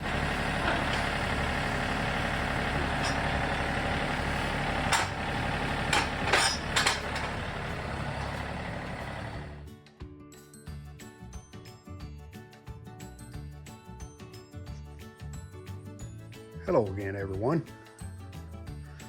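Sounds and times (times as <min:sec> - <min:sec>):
tractor diesel engine running: 0:00.0 - 0:09.6.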